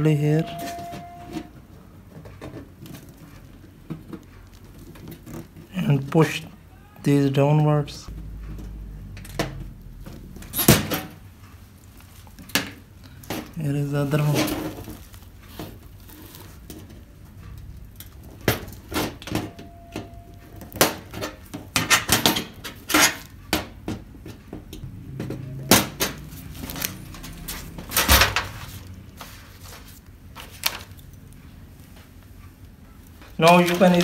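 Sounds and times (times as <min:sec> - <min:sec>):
brief squeak: 0:00.3 - 0:01.5.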